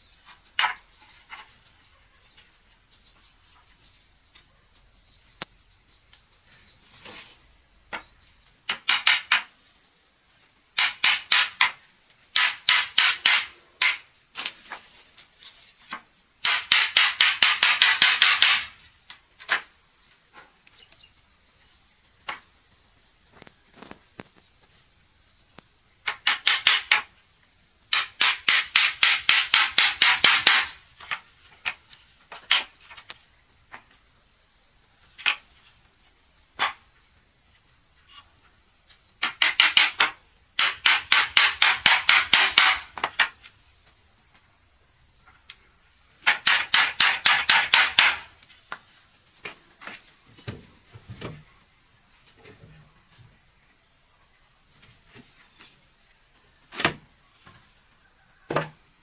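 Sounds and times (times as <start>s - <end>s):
insects chirring: 0.0s - 59.0s
hammer striking wood: 12.4s - 14.0s, 16.4s - 18.8s, 27.9s - 30.8s, 39.2s - 43.3s, 46.2s - 48.3s.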